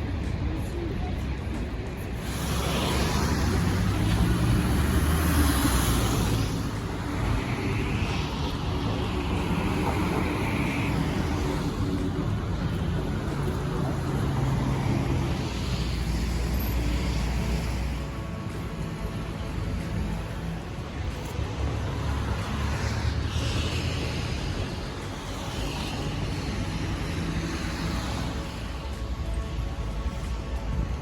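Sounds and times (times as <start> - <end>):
traffic rumble: 0.0 - 31.0.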